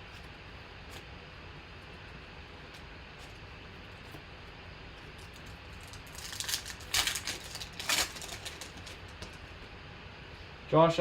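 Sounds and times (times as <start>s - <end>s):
wrapper crinkling: 5.3s - 9.2s.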